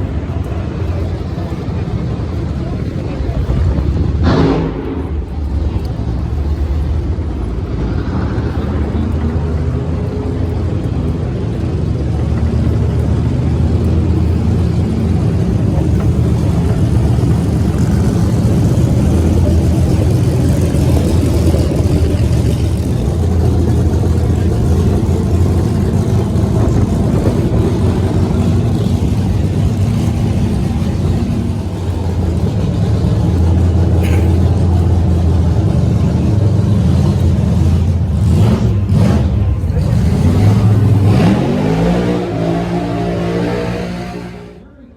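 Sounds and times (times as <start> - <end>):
drag racing engine idling: 0.0 - 42.7.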